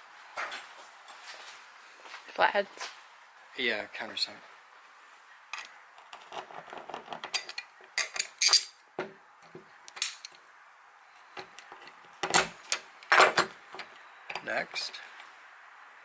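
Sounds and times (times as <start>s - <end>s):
metal bolts clinking and rattling: 5.5s - 8.8s, 10.0s - 10.4s, 11.8s - 14.5s.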